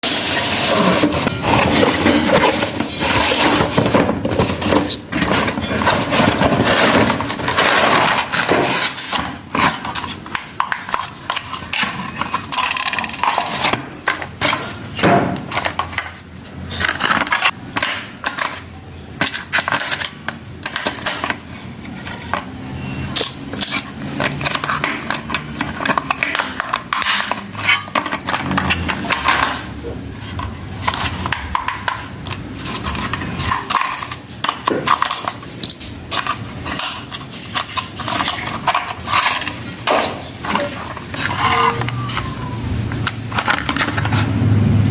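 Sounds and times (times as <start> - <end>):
packaging rustling and crinkling: 0.1 - 17.6.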